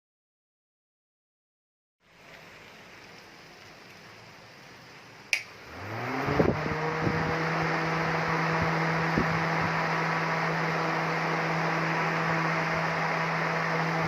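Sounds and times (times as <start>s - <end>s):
radiator fan humming: 2.2s - 14.0s
switch click: 5.3s - 5.5s.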